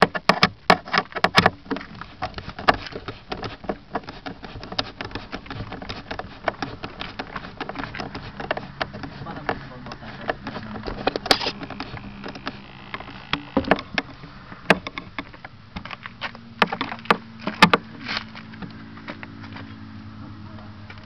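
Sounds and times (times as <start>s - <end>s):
knocks and clatters from handling: 0.0s - 12.5s
model airplane engine idling: 2.6s - 15.6s.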